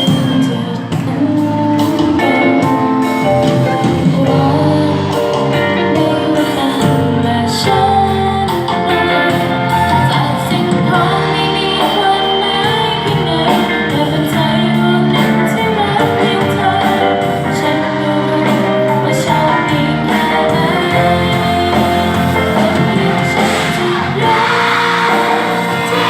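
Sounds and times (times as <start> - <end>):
band accompaniment: 0.0 - 26.0
person singing: 0.0 - 26.0.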